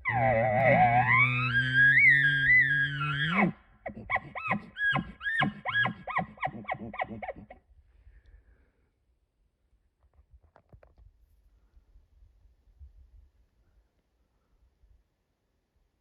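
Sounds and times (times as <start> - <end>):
elk bugling: 0.0 - 7.6
elk chuckles: 3.2 - 7.6.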